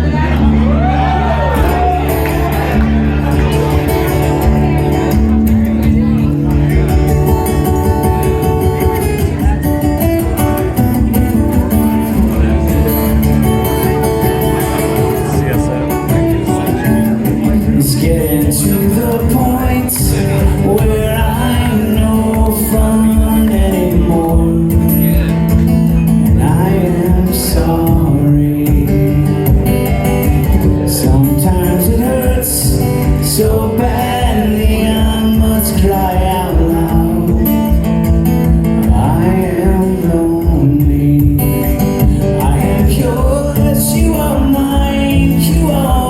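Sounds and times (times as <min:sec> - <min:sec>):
guitar playing chords: 0:00.0 - 0:46.0
man singing: 0:12.0 - 0:46.0.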